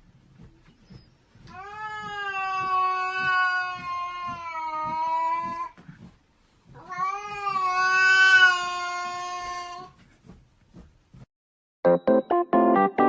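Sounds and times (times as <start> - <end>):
cat yowling: 1.6 - 5.7, 6.8 - 9.9.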